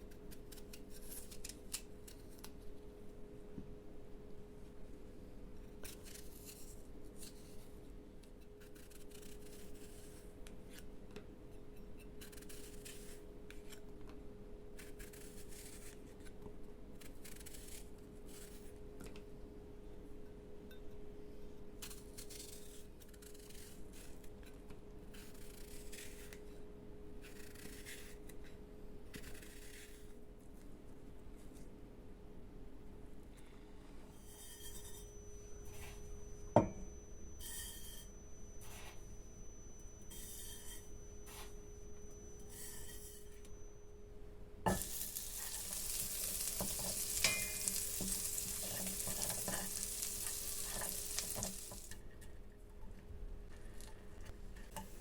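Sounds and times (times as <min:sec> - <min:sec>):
utensil scraping and cutting food: 0:00.0 - 0:02.7, 0:05.8 - 0:07.7, 0:08.4 - 0:10.9, 0:11.8 - 0:13.8, 0:14.8 - 0:16.4, 0:27.2 - 0:28.5, 0:29.1 - 0:30.1, 0:44.7 - 0:52.1
faint hum: 0:22.9 - 0:55.0.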